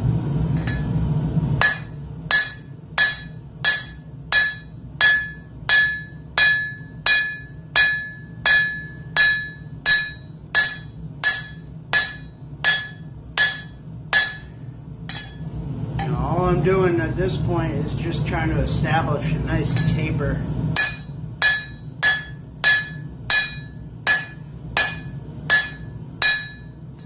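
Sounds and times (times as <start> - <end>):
steady low hum: 0.0 - 27.0
hammer striking steel on anvil: 0.6 - 0.9, 1.6 - 16.2, 19.7 - 20.1, 20.8 - 26.8.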